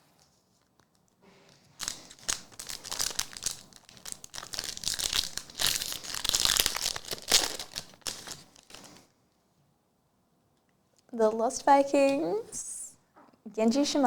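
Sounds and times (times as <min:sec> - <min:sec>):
foil wrapper crinkling and tearing: 0:00.6 - 0:09.1.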